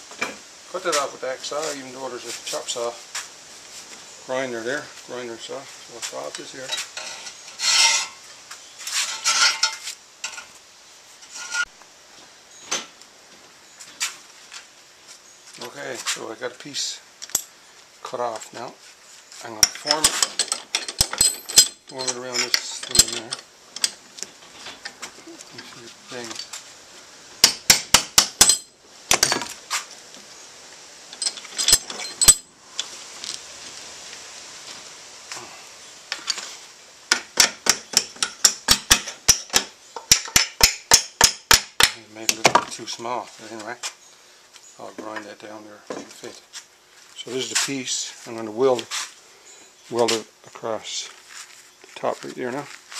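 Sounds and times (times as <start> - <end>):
hacksaw cutting steel: 7.0 - 8.2
metal clinks: 19.6 - 24.0, 27.4 - 29.5, 31.1 - 32.5.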